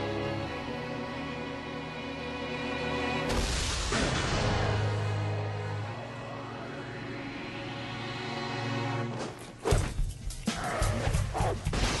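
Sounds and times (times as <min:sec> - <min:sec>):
dramatic soundtrack music: 0:00.0 - 0:12.0.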